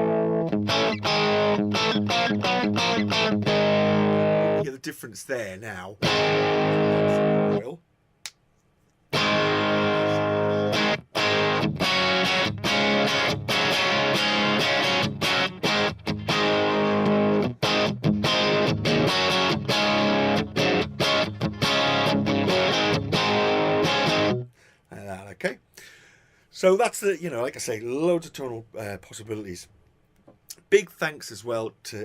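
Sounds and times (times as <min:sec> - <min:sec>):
electric guitar chords: 0:00.0 - 0:04.7, 0:06.0 - 0:07.7, 0:09.1 - 0:24.5.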